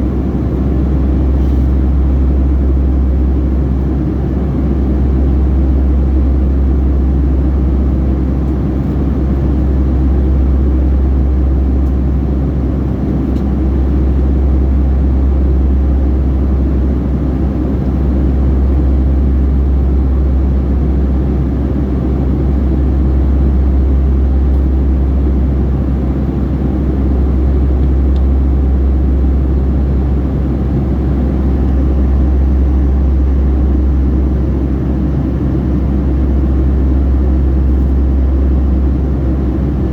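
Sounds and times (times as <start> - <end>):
airliner cabin rumble: 0.0 - 39.9.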